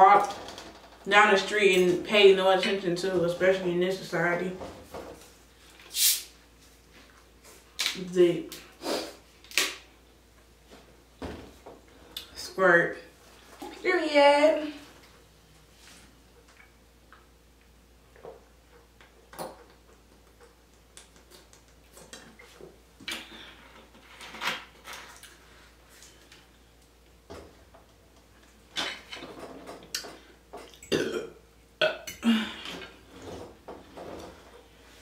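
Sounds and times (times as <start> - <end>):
person burping: 30.8 - 32.9.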